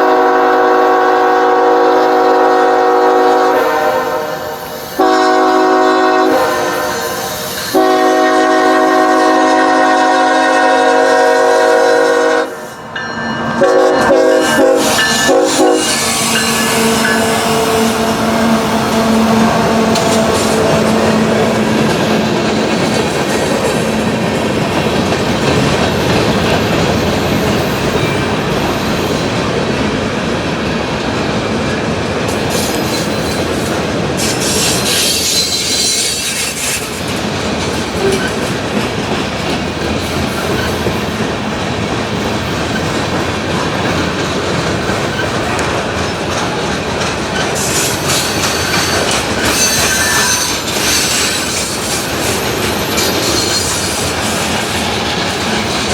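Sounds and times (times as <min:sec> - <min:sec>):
train wheels rumbling on rails: 0:00.0 - 0:55.9
high-pitched wheel noise: 0:13.0 - 0:26.2
clacking over rail joints: 0:14.0 - 0:28.7, 0:31.6 - 0:55.9.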